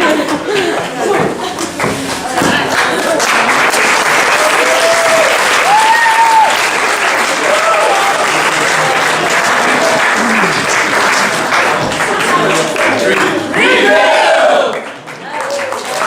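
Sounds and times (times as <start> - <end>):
audience applauding: 1.7 - 16.0.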